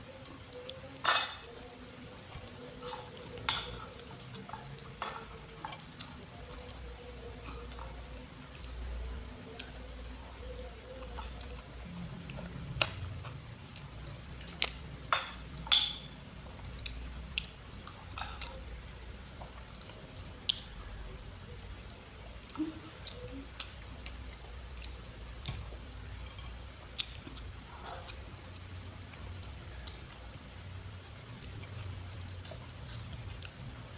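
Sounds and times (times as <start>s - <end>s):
person chewing wetly: 1.6s - 33.9s.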